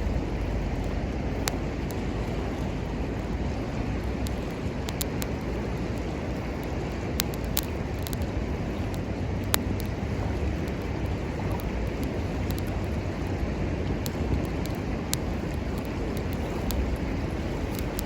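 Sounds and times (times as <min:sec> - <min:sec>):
low rushing background: 0:00.0 - 0:18.0
wood fire crackling: 0:00.0 - 0:18.0.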